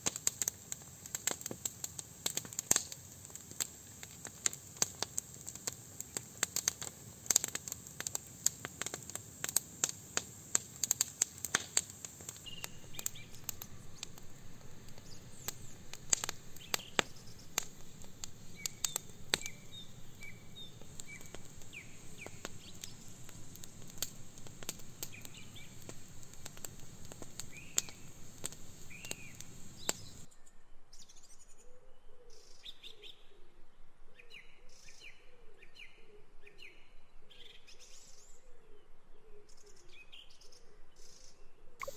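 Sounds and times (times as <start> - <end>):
wood fire crackling and popping: 0.0 - 30.3
small birds chirping: 1.1 - 30.4, 39.5 - 41.9
bird repeated low call: 12.4 - 30.2.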